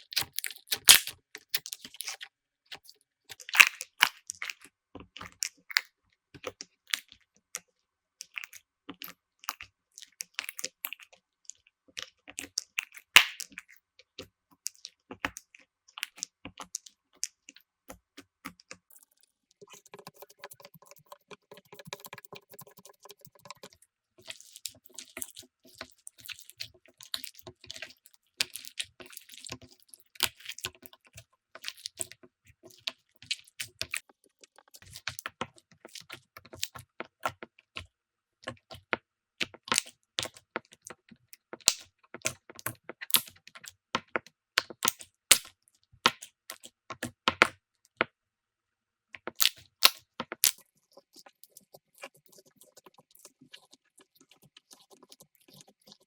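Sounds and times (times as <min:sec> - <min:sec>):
slime crackling and popping: 0:00.0 - 0:02.2, 0:03.3 - 0:04.6, 0:12.4 - 0:13.6, 0:49.3 - 0:50.6.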